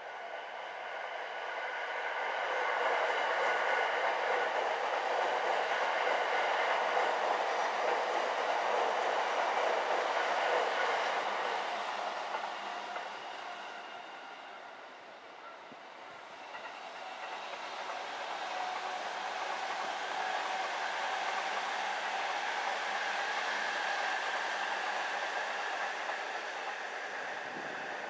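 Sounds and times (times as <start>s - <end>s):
electric train running on rails: 0.0s - 28.0s.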